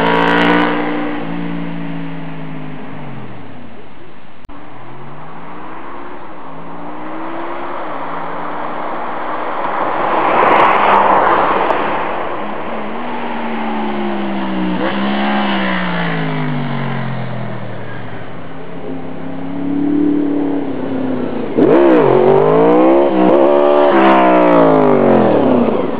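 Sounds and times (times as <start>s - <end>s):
motorcycle engine accelerating: 0.0s - 3.8s, 12.7s - 25.9s.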